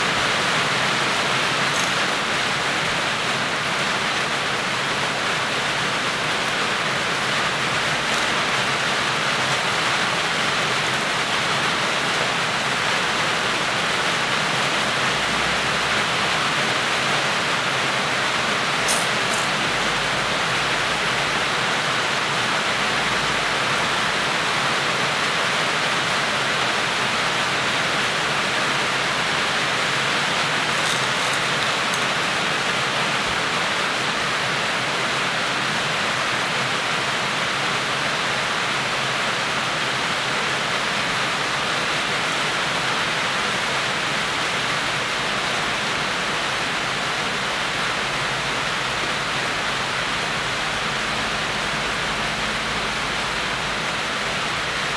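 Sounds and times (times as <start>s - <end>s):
steady hiss: 0.0s - 37.1s.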